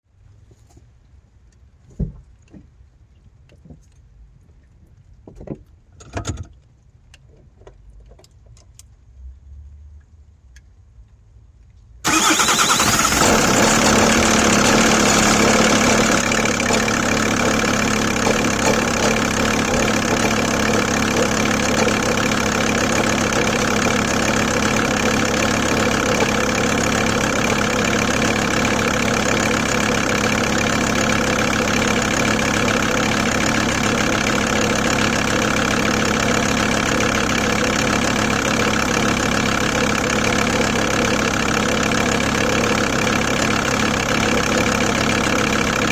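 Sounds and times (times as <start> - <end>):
engine rattle: 12.0 - 45.9
diesel engine idling: 12.1 - 45.9.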